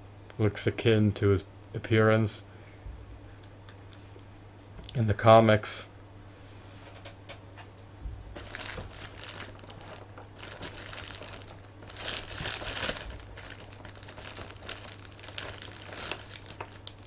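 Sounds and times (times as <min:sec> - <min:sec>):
packaging crinkling and rustling: 0:08.4 - 0:17.0.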